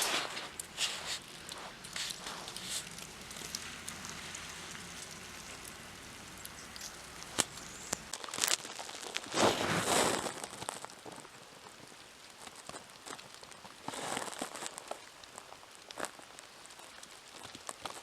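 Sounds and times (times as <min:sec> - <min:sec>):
crunches: 0:00.0 - 0:08.1
hiss of falling wet snow: 0:00.0 - 0:08.1, 0:09.2 - 0:11.2
light ticks: 0:00.5 - 0:08.1.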